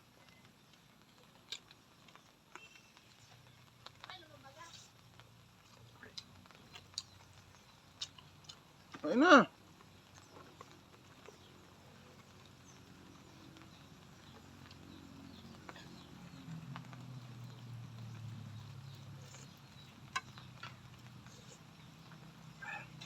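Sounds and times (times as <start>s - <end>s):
person eating: 5.7s - 9.0s.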